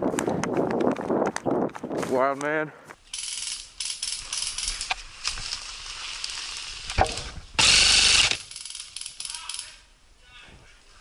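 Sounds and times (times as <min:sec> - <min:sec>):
steady hiss: 0:03.0 - 0:11.0
airsoft gun full-auto burst: 0:07.6 - 0:08.8.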